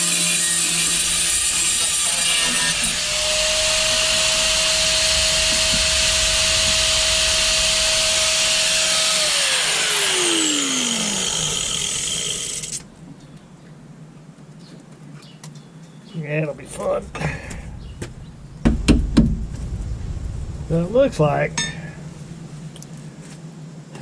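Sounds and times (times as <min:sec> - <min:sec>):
hand-held grinder on metal: 0:00.0 - 0:12.8.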